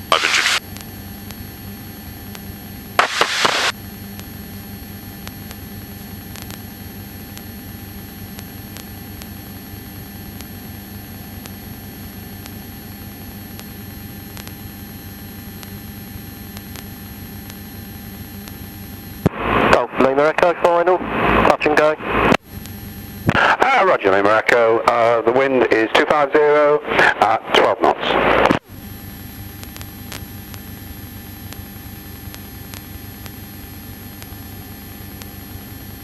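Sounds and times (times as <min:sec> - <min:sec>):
loud burst of noise: 0:00.0 - 0:00.6, 0:03.0 - 0:03.8, 0:19.2 - 0:19.9.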